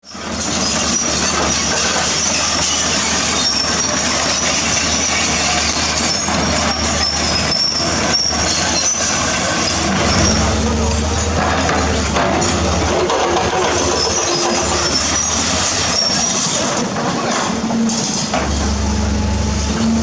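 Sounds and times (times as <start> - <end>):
excavator diesel engine: 0.0 - 20.0
high-pitched squeals: 2.1 - 16.7.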